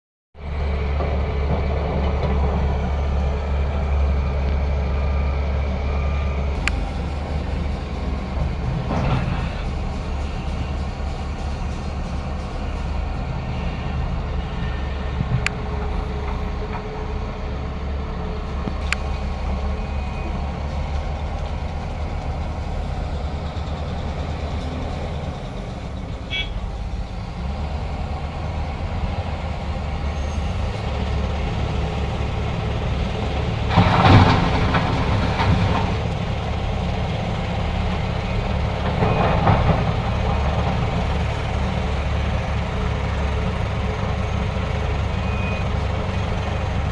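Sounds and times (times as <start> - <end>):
heavy diesel engines rumbling: 0.4 - 46.9
loud rushing: 6.6 - 29.7.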